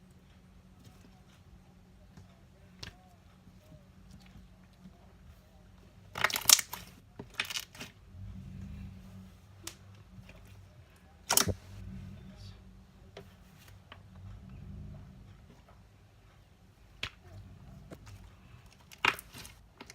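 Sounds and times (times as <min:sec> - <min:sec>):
slime popping and crackling: 0:06.1 - 0:07.9.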